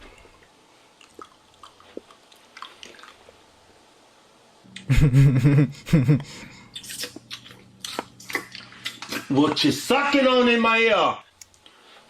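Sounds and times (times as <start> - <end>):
wet lip-smacking and mouth clicks: 1.0 - 3.4, 6.8 - 9.3.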